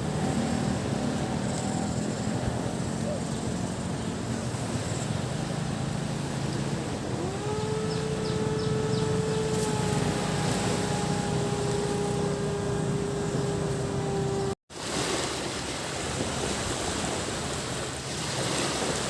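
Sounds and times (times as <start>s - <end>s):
low engine hum: 0.0s - 14.6s
motor tone rising: 0.0s - 14.6s
surf washing on sand: 0.0s - 19.0s.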